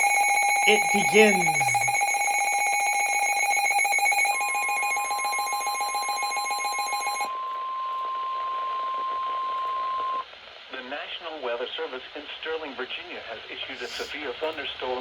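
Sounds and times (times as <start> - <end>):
rapid electronic alert beeping: 0.0 - 2.6
steady warning alarm tone: 0.0 - 7.3.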